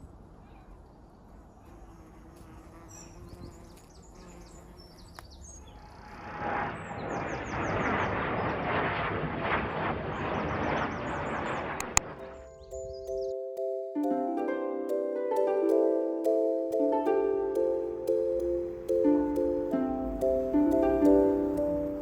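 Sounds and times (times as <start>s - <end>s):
songbirds chirping: 0.0s - 6.2s, 10.5s - 14.3s
steady rushing noise: 6.0s - 12.5s.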